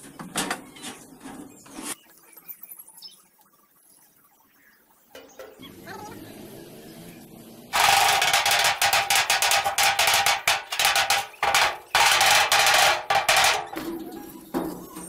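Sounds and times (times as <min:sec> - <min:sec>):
power tool rattling: 0:07.7 - 0:14.0.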